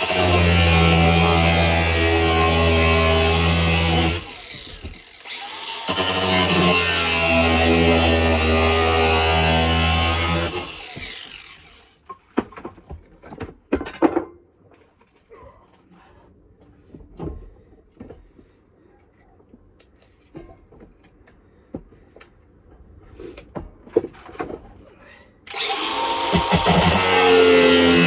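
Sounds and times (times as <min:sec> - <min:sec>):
grinder whine: 0:00.0 - 0:12.0, 0:25.5 - 0:28.0
knocks and clatters of handling: 0:12.0 - 0:15.9, 0:16.6 - 0:24.9.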